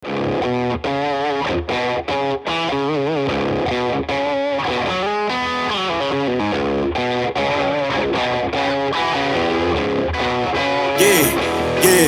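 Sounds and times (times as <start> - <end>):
distorted electric guitar melody: 11.3 - 12.0.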